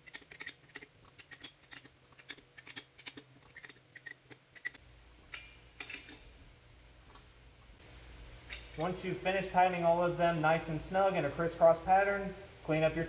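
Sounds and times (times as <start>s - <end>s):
tire iron tightening lug nuts: 0.0s - 6.4s.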